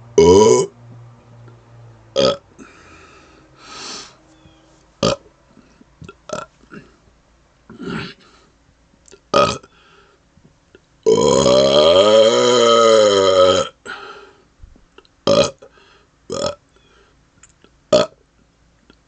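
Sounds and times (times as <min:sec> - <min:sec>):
man burping: 0:00.2 - 0:00.7, 0:02.2 - 0:02.8, 0:05.0 - 0:05.3, 0:06.3 - 0:07.0, 0:07.7 - 0:08.3, 0:09.1 - 0:09.7, 0:11.0 - 0:14.0, 0:15.2 - 0:16.6, 0:17.9 - 0:18.2
breathing: 0:02.6 - 0:04.3, 0:08.2 - 0:08.6, 0:09.7 - 0:10.3, 0:13.8 - 0:14.6, 0:15.7 - 0:16.2, 0:16.8 - 0:17.3.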